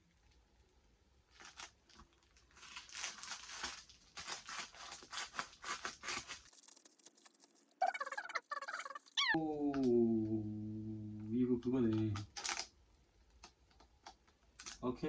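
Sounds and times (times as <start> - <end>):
parcel packaging ripping: 1.3 - 7.8, 12.2 - 12.7.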